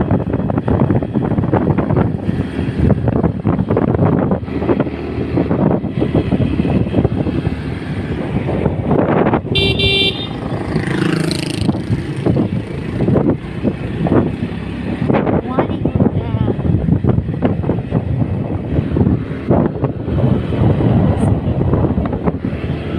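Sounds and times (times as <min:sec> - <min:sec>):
vehicle engine rumbling: 0:00.0 - 0:22.9
horn toot: 0:09.5 - 0:10.6.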